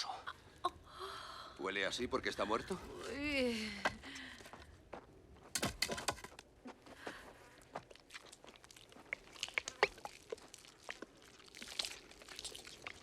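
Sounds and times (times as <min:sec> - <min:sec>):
wet crunching: 0:07.7 - 0:13.0.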